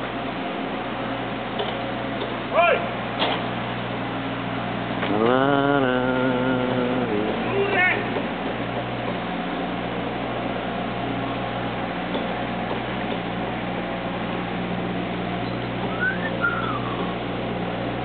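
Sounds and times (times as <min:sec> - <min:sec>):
boat engine humming: 0:00.0 - 0:18.0
wind: 0:00.0 - 0:18.0
short whistled notes: 0:15.9 - 0:17.2.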